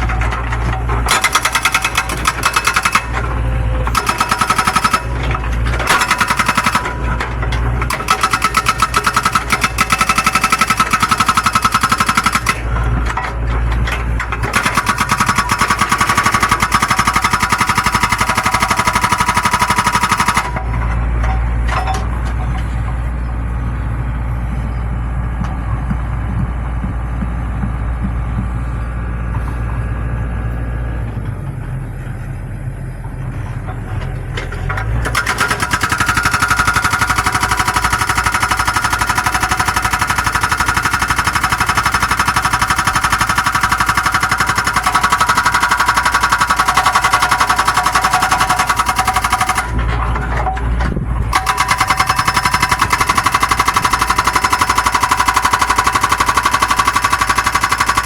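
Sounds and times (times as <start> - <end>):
hydraulic breaker hammering: 0.0 - 22.7, 34.5 - 58.0
diesel engine running: 0.0 - 58.0.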